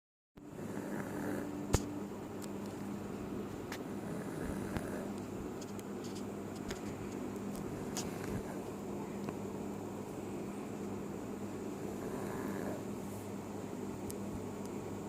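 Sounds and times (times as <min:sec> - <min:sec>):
dog snoring: 0:00.4 - 0:01.7, 0:03.8 - 0:05.2, 0:07.7 - 0:08.7, 0:11.7 - 0:13.0.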